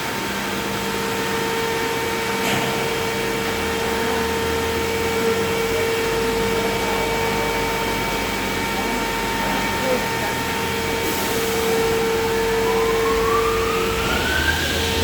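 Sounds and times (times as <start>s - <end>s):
panel saw machine whining: 9.2s - 15.0s.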